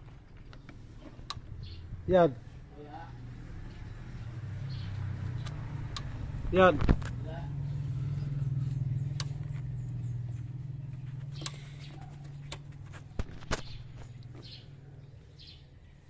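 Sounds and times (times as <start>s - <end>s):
birds chirping: 0.0s - 16.0s
sharp clicks: 5.4s - 6.2s, 9.0s - 10.0s, 11.3s - 14.4s.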